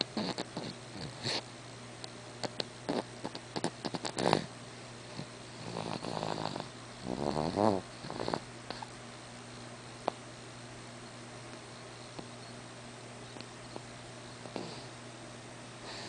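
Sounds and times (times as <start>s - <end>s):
clicks and snuffles: 0.0s - 4.5s
person snoring: 3.8s - 4.5s, 5.6s - 8.4s.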